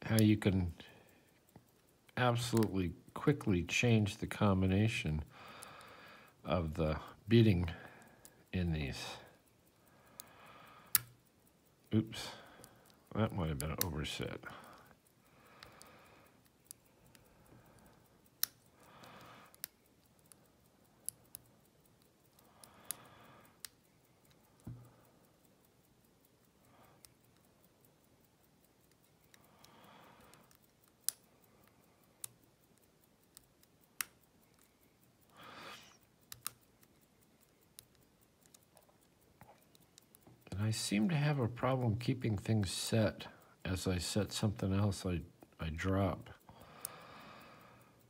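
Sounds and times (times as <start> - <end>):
lock pick clicks: 10.9 - 11.2.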